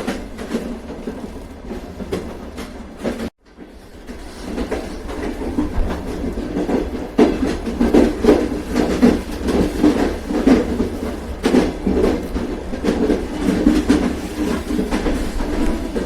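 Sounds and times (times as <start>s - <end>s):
train low rumble: 0.0s - 16.0s
train wheels clacking over rail joints: 0.0s - 16.0s.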